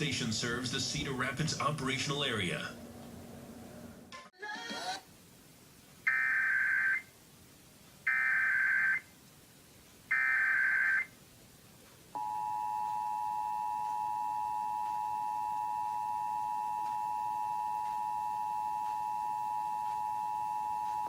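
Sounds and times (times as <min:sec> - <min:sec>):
two-tone attention signal: 0:12.2 - 0:21.0.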